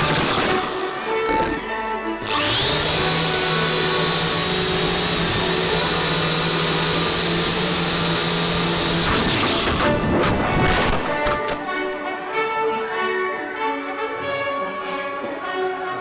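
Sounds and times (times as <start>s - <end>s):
drone propellers whining: 0.0s - 12.0s.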